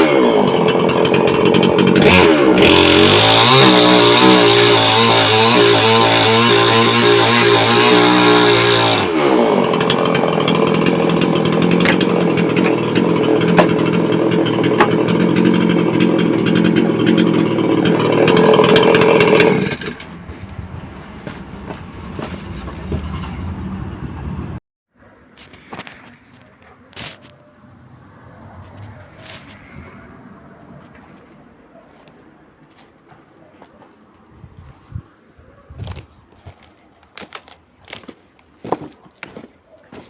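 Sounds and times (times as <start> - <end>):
chainsaw engine running: 0.0 - 22.7, 35.8 - 40.0.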